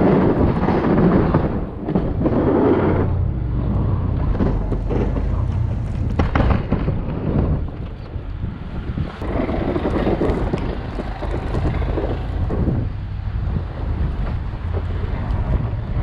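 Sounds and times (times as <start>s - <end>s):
wind buffeting microphone: 0.0s - 16.0s
vehicle engine running: 3.0s - 6.5s, 9.2s - 16.0s.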